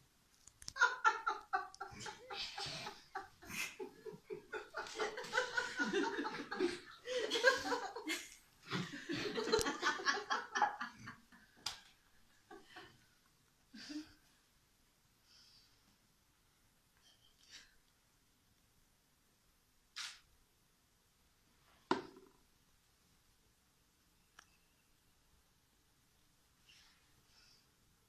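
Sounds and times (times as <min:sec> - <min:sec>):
person laughing hard: 0:00.7 - 0:11.2.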